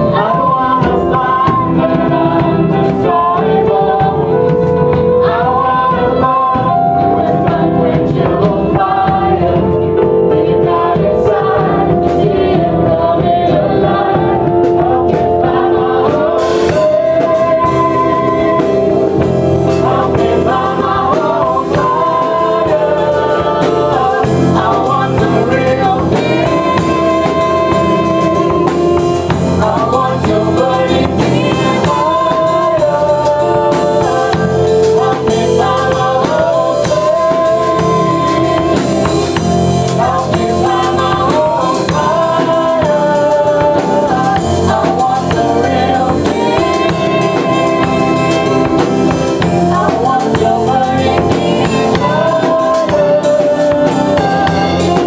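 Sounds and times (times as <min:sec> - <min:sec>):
band playing gospel music: 0:00.0 - 0:55.0
group of voices singing: 0:00.0 - 0:55.0.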